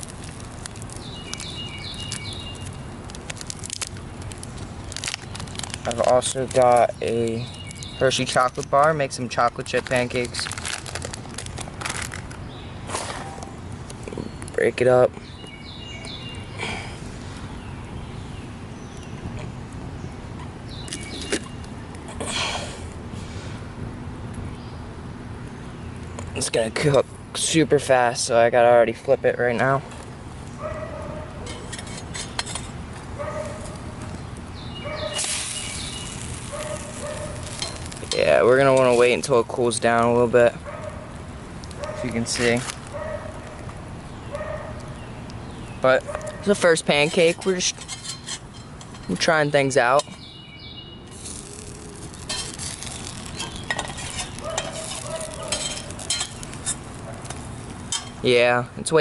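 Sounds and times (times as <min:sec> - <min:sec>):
batter sizzling in a frying pan: 0:35.1 - 0:38.3, 0:51.1 - 0:57.2.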